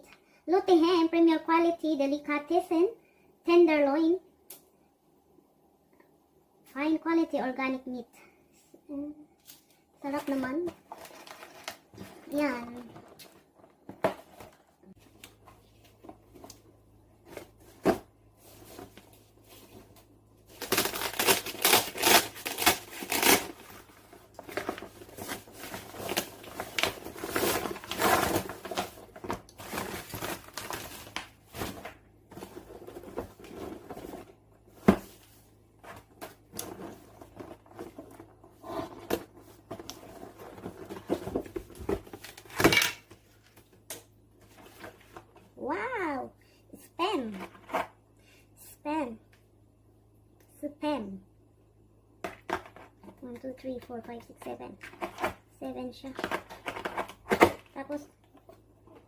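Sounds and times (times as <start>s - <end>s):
plastic and cardboard crinkling: 10.0s - 45.6s, 56.0s - 59.0s.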